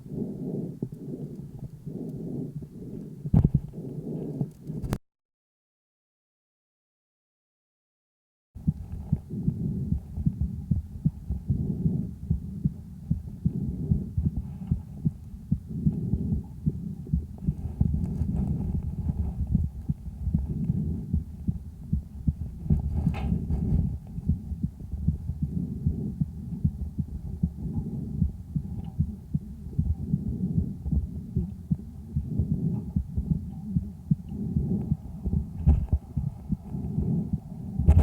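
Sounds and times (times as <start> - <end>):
calf breath sounds through stethoscope: 0.0 - 4.9, 8.7 - 21.4, 25.3 - 37.9
heartbeat: 0.0 - 5.0, 8.6 - 38.0.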